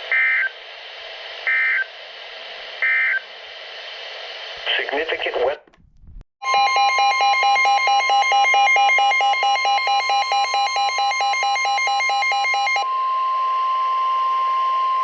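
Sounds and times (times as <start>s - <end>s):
rapid pulsing alarm beep: 6.4s - 12.8s
steady alarm tone: 6.4s - 12.9s.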